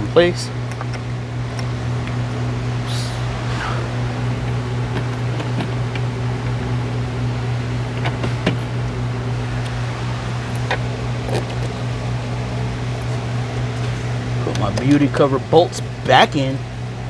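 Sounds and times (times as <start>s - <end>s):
electric fan humming: 0.0s - 17.0s.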